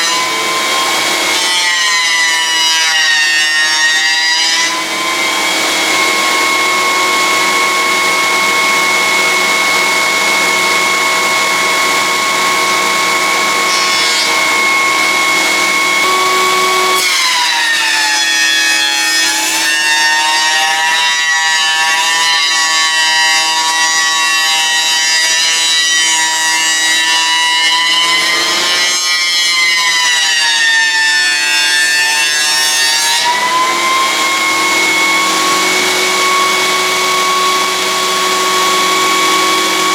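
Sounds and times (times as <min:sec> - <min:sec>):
jointer high whine: 0:00.0 - 0:24.8, 0:27.0 - 0:39.9.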